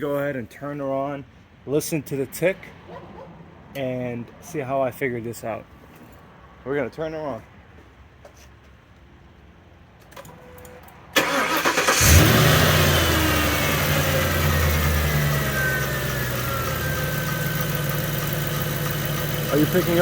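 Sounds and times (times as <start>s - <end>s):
car engine starting and idling: 10.1s - 20.0s
engine ticking: 11.2s - 20.0s.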